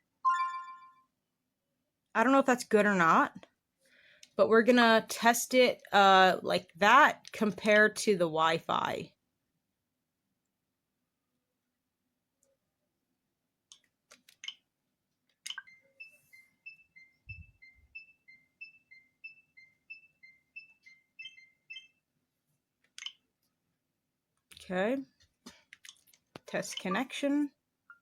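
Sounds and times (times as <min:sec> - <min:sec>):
menu clicks: 0:00.3 - 0:00.9
two-note rising blips: 0:00.3 - 0:01.0.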